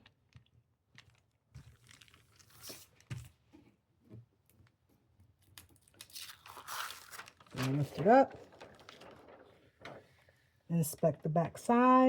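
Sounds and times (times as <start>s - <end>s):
tape crinkling and rubbing: 5.6s - 10.1s.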